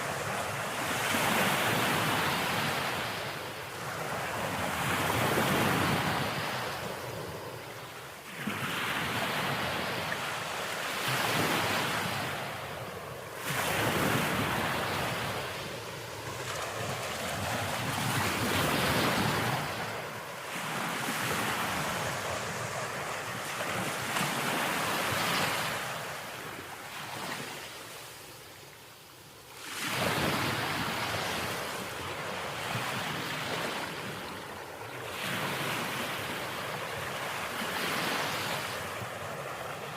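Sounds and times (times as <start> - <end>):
sea waves breaking: 8.3 - 28.1, 29.6 - 39.9.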